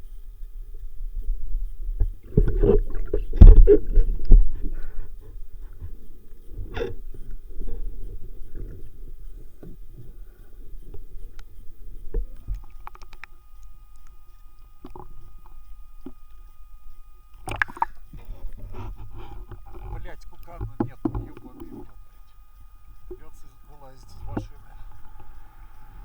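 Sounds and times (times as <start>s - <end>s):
underwater rumble of moving water: 0.0s - 26.0s
faint underwater clicks and knocks: 0.2s - 26.0s
gurgling splash: 17.4s - 18.0s.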